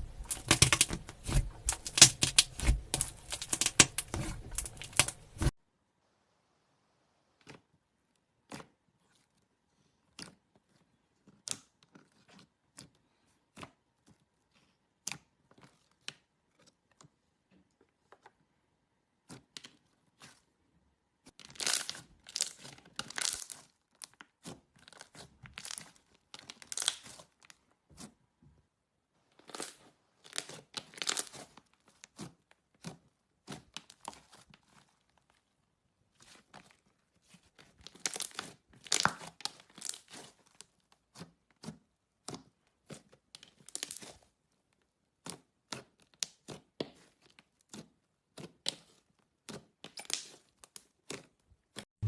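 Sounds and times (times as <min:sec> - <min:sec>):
slime clicking and crackling: 0:00.0 - 0:05.5, 0:21.4 - 0:27.6, 0:29.4 - 0:35.4, 0:37.1 - 0:44.3, 0:45.1 - 0:51.8.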